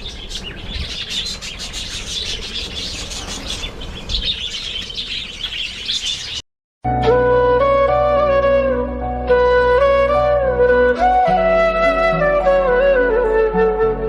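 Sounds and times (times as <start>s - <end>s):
budgerigars chattering: 0.0s - 6.4s.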